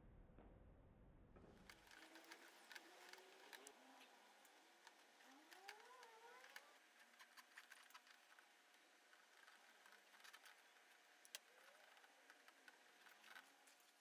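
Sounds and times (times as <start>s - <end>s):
faint clicks: 1.6s - 14.0s
faint wavering squeak: 5.2s - 6.8s.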